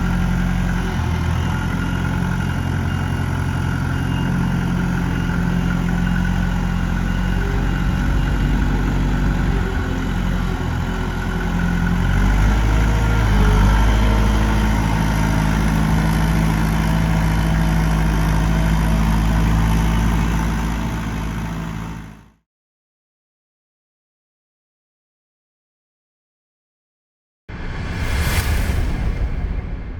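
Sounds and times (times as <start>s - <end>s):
diesel engine running: 0.0s - 22.3s.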